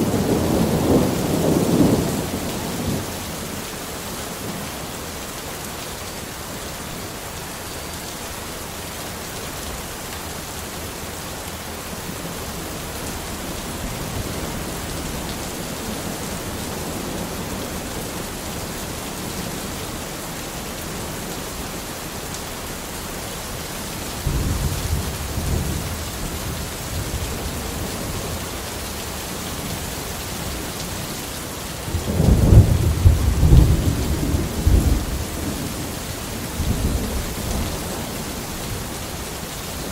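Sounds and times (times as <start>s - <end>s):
heavy rain: 0.0s - 39.9s
rolling thunder: 24.2s - 27.9s, 31.9s - 36.0s.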